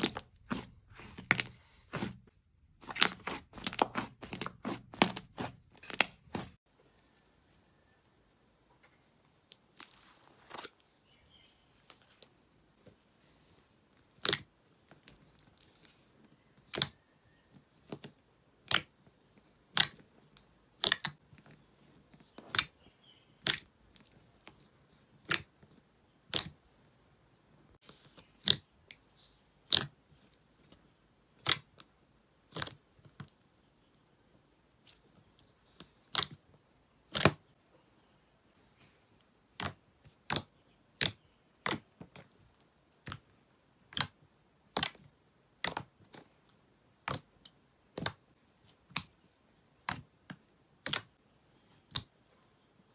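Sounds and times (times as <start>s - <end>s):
slime squishing: 0.0s - 6.5s, 13.2s - 16.0s, 19.7s - 20.0s, 23.4s - 25.6s, 27.8s - 33.4s, 34.7s - 36.5s, 39.5s - 42.4s, 43.0s - 46.4s, 47.0s - 52.2s.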